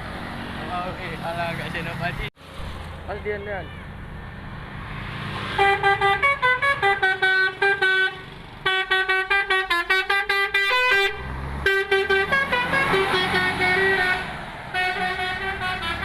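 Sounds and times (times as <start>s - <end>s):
bus horn playing a tune: 5.6s - 16.0s.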